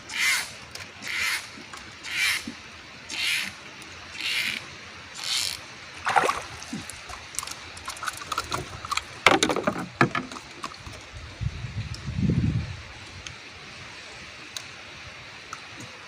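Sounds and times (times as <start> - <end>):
splashing swishes: 6.0 - 7.1
knocks and clicks on wood: 9.2 - 10.4.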